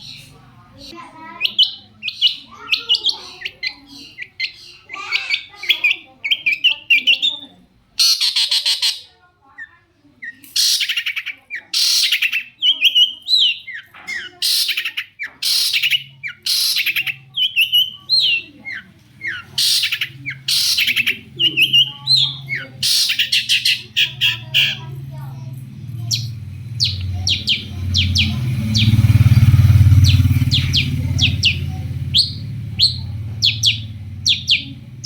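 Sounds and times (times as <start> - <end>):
bird harsh chattering: 0.0 - 35.0
bird twittering whistles: 10.3 - 24.9, 26.0 - 34.8
faint low hum: 15.7 - 35.0.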